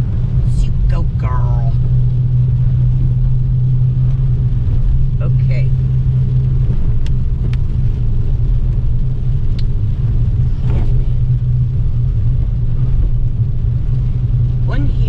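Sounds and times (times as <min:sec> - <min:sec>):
car interior road rumble: 0:00.0 - 0:15.0
light ticks: 0:06.4 - 0:07.7, 0:09.5 - 0:09.8.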